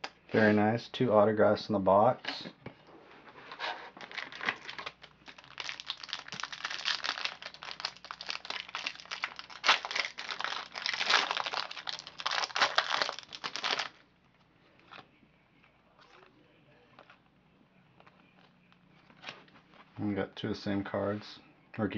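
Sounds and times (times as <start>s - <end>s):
wrapper crinkling and rustling: 4.0s - 14.0s.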